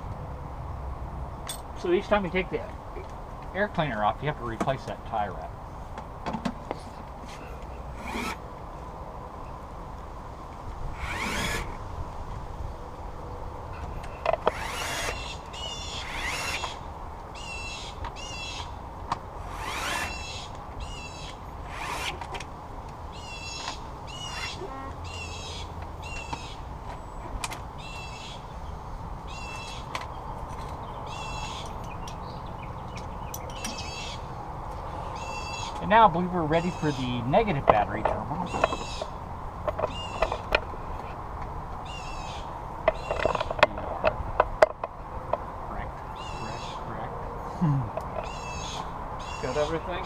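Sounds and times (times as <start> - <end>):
small birds chirping: 6.7 - 8.4, 13.6 - 22.0, 22.6 - 41.1, 41.8 - 44.0, 45.2 - 50.0
cable tie ratcheting zips: 14.3 - 16.8, 19.5 - 20.5, 21.7 - 22.5.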